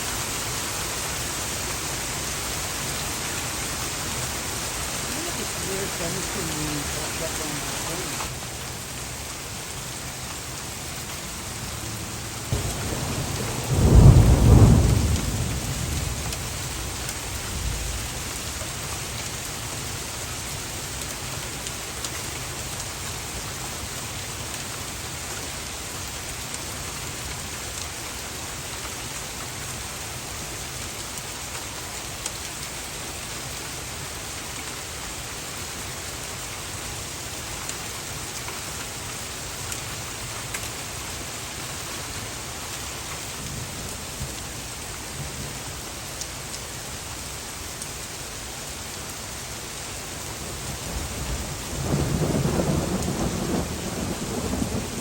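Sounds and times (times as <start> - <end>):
steady rain: 0.0 - 55.0
thunder clap and rumble: 12.5 - 18.1, 50.8 - 55.0.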